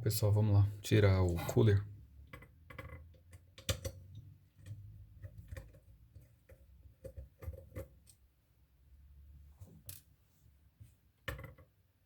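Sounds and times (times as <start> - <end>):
tool clicking and tapping on computer: 2.3 - 8.2.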